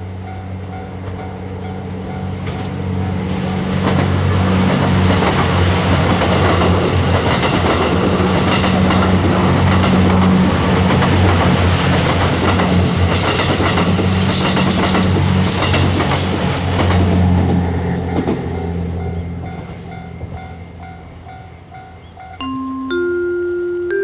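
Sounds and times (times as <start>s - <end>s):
train wheels on rails: 0.0s - 22.4s
train engines humming: 0.0s - 24.0s.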